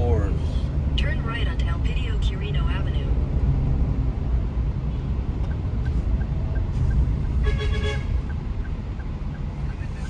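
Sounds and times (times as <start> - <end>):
car road and engine rumble: 0.0 - 10.0
turn signal ticking: 0.0 - 10.0
car horn toot: 7.3 - 8.3.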